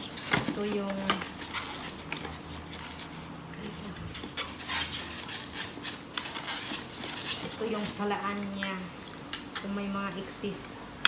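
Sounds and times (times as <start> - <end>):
packaging and plastic handling: 0.0 - 8.8.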